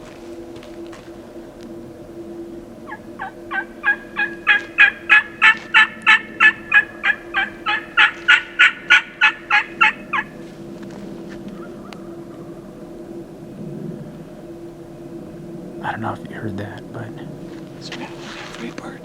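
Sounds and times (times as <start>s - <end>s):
turkey yelping: 2.8s - 10.4s, 11.5s - 12.8s.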